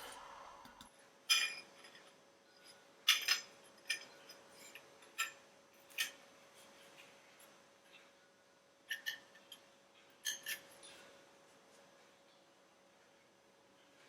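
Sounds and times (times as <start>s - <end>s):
glass and metal clinking: 1.3s - 6.2s, 8.9s - 9.6s.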